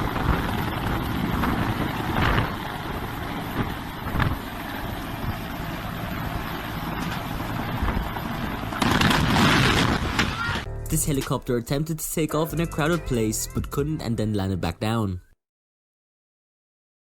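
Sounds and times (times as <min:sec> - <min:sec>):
helicopter engine and rotor: 0:00.0 - 0:09.4.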